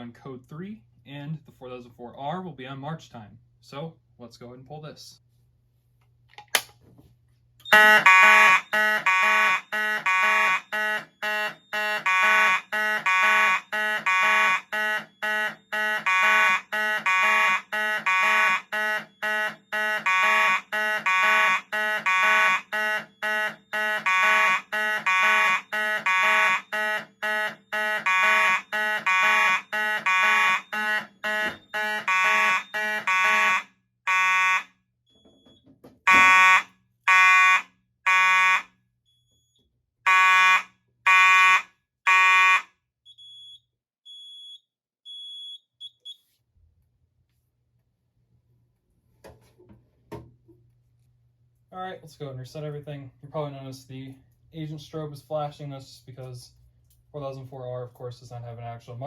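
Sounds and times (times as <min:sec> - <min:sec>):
fire alarm horns pulsing: 0:07.6 - 0:35.3, 0:36.1 - 0:38.8, 0:40.0 - 0:43.2.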